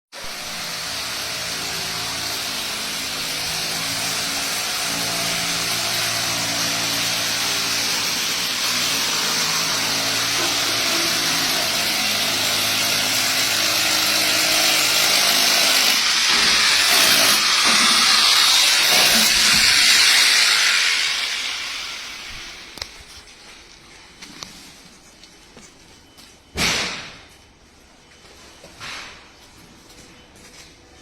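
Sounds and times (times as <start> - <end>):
loud rushing hiss: 0.2 - 22.8.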